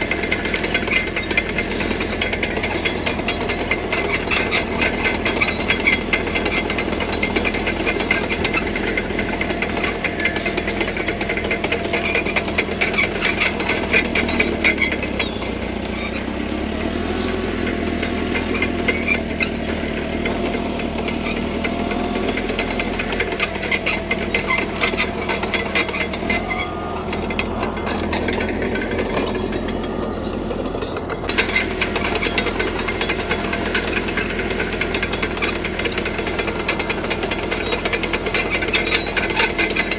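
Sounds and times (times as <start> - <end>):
bulldozer diesel engine running: 0.0 - 39.9
steel tracks clanking: 0.0 - 39.9.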